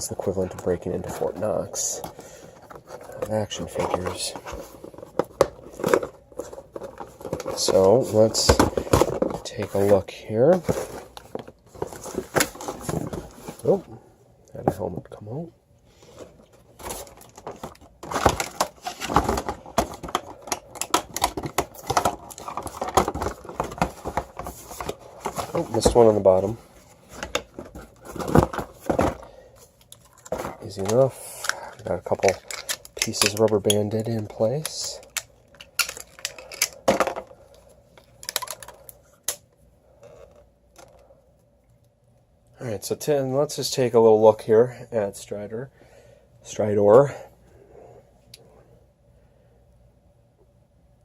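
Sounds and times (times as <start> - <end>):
plastic packaging clicking and crinkling: 0.0 - 13.8, 16.2 - 39.4
hard plastic pieces clicking: 29.9 - 33.8, 34.6 - 37.2, 38.1 - 39.4.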